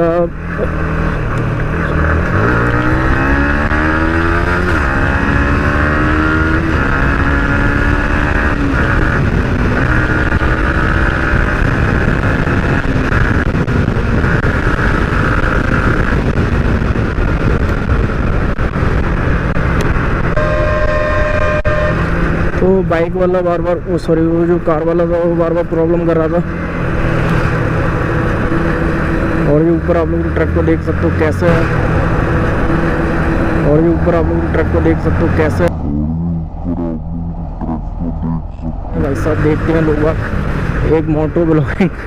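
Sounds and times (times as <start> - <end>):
motorcycle engine accelerating: 0.0 - 23.1, 24.7 - 42.0
wind rushing on microphone: 0.0 - 30.4.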